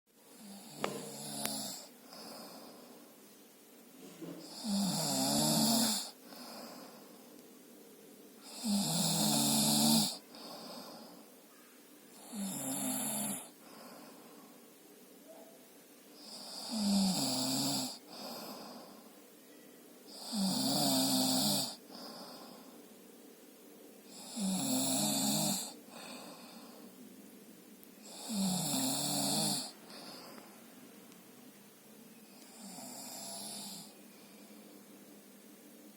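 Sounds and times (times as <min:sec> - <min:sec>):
quiet breathing: 0:00.2 - 0:35.9
man snoring: 0:00.3 - 0:02.7, 0:04.4 - 0:06.7, 0:08.4 - 0:11.1, 0:12.1 - 0:13.6, 0:16.2 - 0:18.8, 0:20.1 - 0:22.5, 0:24.1 - 0:26.5, 0:28.0 - 0:30.3, 0:32.5 - 0:34.0
soft breath: 0:01.8 - 0:03.4, 0:06.0 - 0:08.1, 0:10.2 - 0:11.8, 0:13.5 - 0:15.4, 0:18.0 - 0:19.6, 0:21.8 - 0:23.5, 0:25.7 - 0:27.1, 0:29.7 - 0:31.2, 0:33.6 - 0:35.0.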